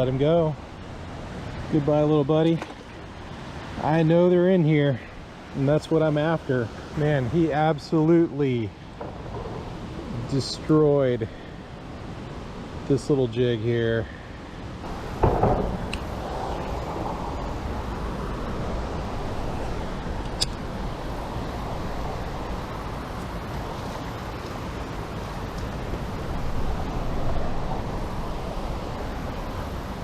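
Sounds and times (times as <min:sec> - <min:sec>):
sharp click: 0:20.2 - 0:20.6.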